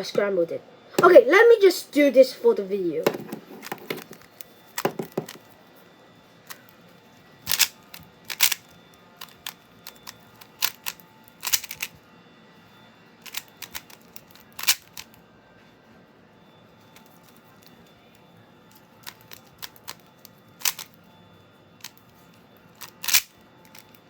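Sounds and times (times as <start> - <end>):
plastic cube layers clicking: 7.5 - 7.7, 8.3 - 8.6, 9.2 - 11.9, 14.6 - 15.0, 20.6 - 20.9, 22.8 - 23.8.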